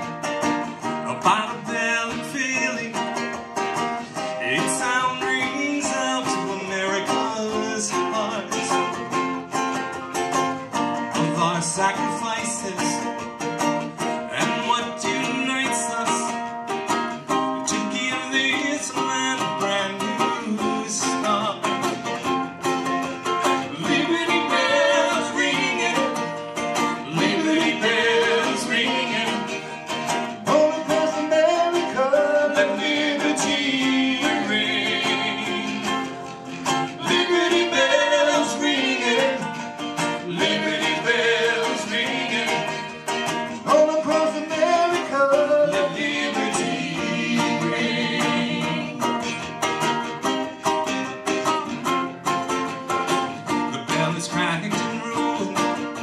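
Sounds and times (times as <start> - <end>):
guitar accompaniment: 0.0 - 56.0
person singing: 23.6 - 49.6, 53.7 - 55.9.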